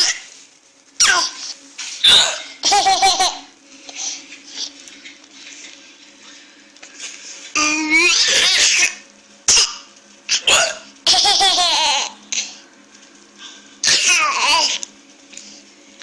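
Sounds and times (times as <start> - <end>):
baby laughing: 2.6 - 3.5, 11.1 - 12.2.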